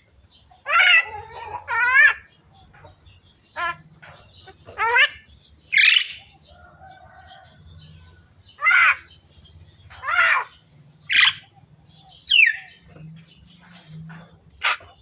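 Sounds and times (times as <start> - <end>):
myna calling: 0.0 - 2.4, 3.5 - 6.4, 8.5 - 15.0.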